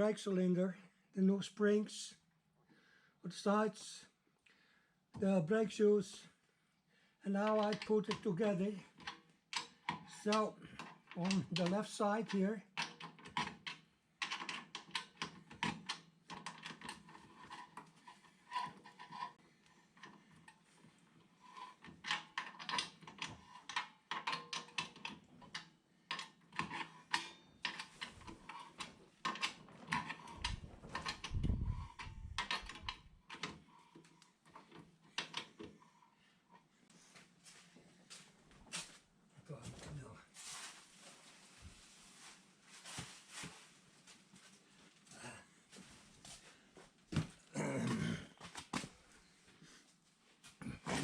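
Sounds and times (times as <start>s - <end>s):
hand tools clicking and clinking: 8.9s - 20.6s, 21.7s - 33.6s.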